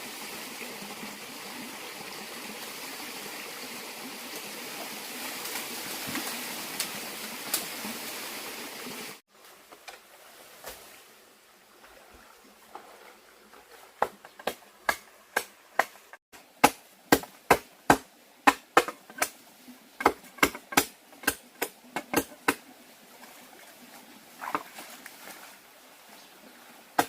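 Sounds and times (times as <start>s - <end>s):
hand tool striking wood: 14.0s - 19.4s, 20.0s - 22.6s.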